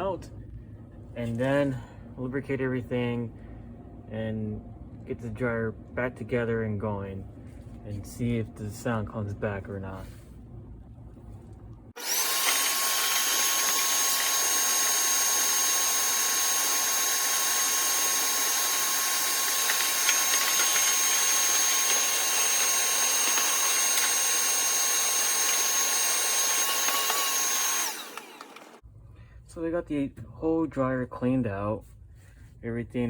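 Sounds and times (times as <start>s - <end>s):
vacuum cleaner running: 12.0s - 28.8s.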